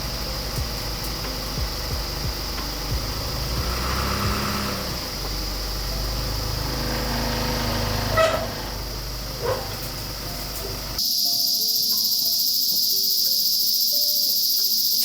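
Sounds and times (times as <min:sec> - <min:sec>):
truck engine idling: 0:00.0 - 0:11.0
insects droning: 0:00.0 - 0:15.0.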